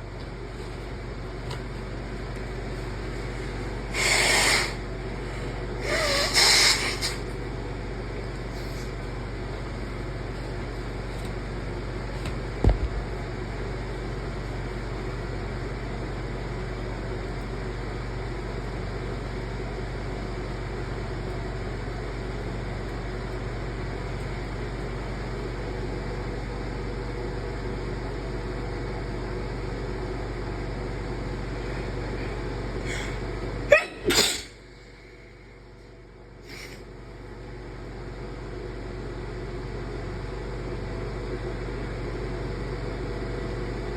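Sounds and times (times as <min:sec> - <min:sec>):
steady background hum: 0:00.0 - 0:43.9
person sneezing: 0:05.8 - 0:07.2, 0:32.9 - 0:34.6.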